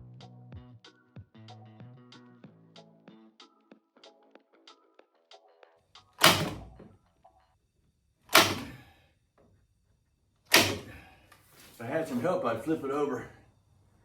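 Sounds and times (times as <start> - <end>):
background music: 0.0 - 7.5
loud knocks with ring: 6.2 - 6.8, 8.4 - 8.8.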